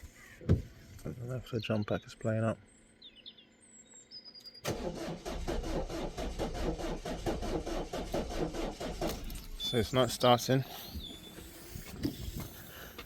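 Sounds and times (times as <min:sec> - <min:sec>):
diesel engine cranking without starting: 0:04.6 - 0:13.0.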